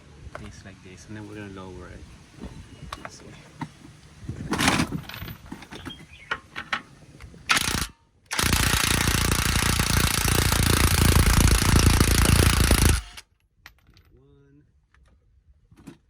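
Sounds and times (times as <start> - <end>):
impact wrench hammering: 7.5 - 13.2.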